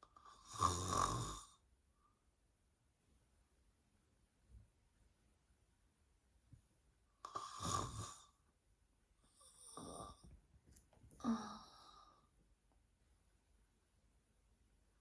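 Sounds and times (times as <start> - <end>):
woman snoring softly: 0.2 - 1.6, 7.2 - 8.4, 9.4 - 10.2, 11.2 - 12.3.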